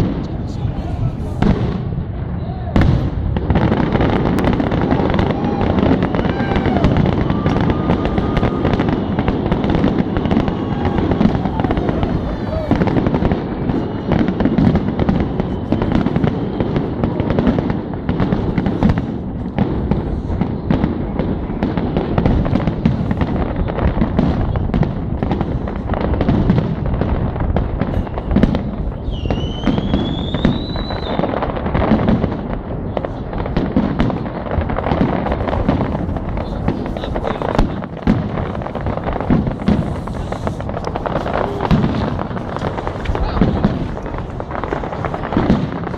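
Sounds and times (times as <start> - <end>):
fireworks bangs and crackling: 0.0 - 45.9
rising firework whistle: 2.4 - 19.1, 27.6 - 32.2, 34.7 - 45.9.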